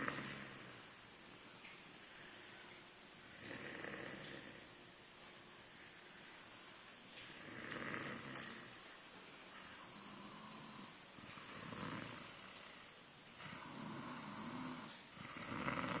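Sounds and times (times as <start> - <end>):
person snoring: 3.4 - 4.6, 13.4 - 16.0.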